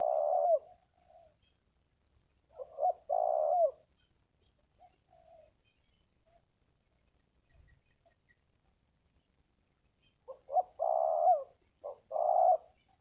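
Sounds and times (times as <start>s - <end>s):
dove cooing: 0.0s - 1.4s, 2.5s - 4.0s, 4.8s - 5.6s, 10.2s - 13.0s.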